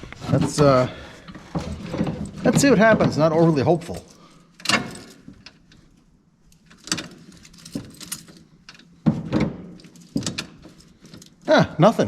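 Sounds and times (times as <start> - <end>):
keys jangling: 3.8 - 5.6, 6.6 - 8.8.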